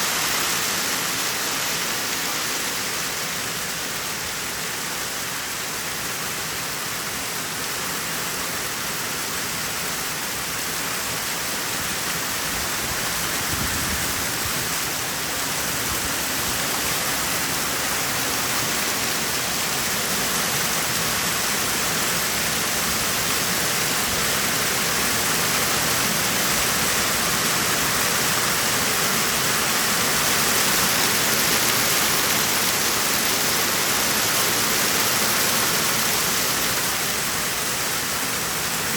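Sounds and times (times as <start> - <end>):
hail and heavy rain pelting: 12.7 - 37.0.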